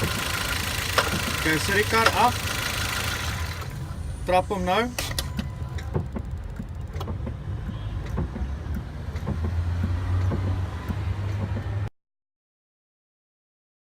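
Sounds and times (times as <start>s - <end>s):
clutch pedal clicks and knocks: 0.9s - 2.3s, 5.0s - 11.7s.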